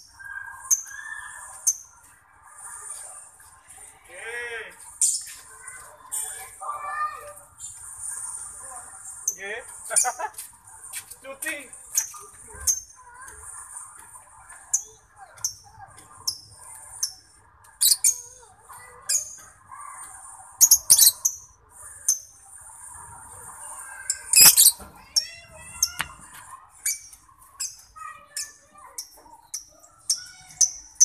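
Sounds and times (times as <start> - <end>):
lovebird trilling and chirping: 17.8 - 18.4, 20.6 - 22.3, 23.9 - 26.1.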